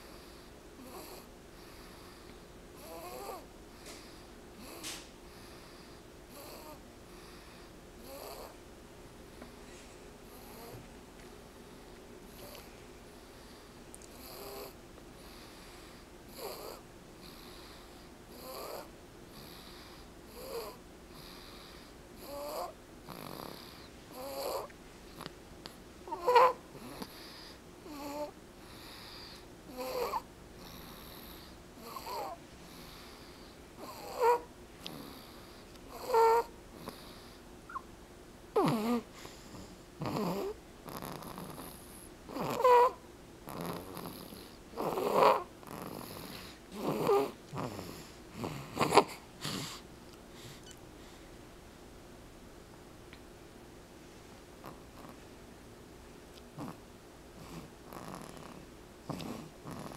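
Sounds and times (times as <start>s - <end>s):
person snoring: 8.0s - 8.6s, 18.3s - 19.7s, 38.6s - 49.8s.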